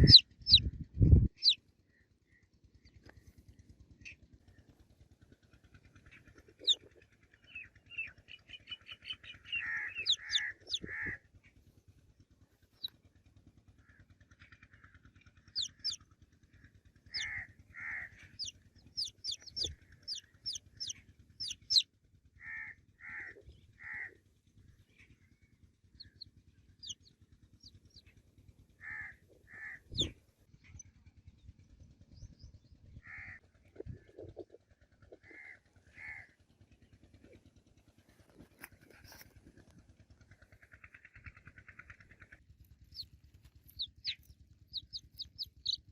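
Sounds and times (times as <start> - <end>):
baby chicks peeping: 0.0 - 1.6, 6.4 - 6.9, 9.1 - 11.2, 15.6 - 16.0, 17.1 - 21.8, 26.0 - 28.0, 29.6 - 30.1, 42.8 - 45.9
low harsh bird call: 8.6 - 11.2, 17.1 - 21.8.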